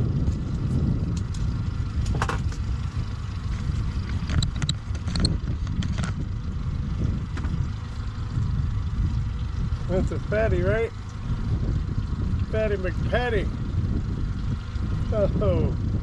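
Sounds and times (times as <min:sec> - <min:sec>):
boat motor low rumble: 0:00.0 - 0:16.0
knocks and clicks of gear: 0:00.2 - 0:02.7, 0:03.6 - 0:06.2, 0:07.3 - 0:07.6.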